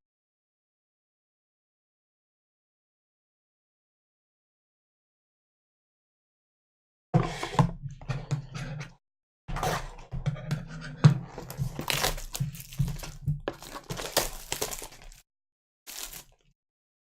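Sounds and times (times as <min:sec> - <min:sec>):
card pack wrappers tearing and crinkling: 0:11.4 - 0:15.2, 0:15.9 - 0:16.5.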